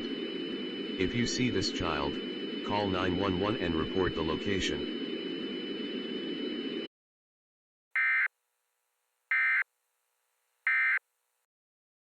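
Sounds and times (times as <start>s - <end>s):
digital data tone bursts: 0.9s - 5.0s.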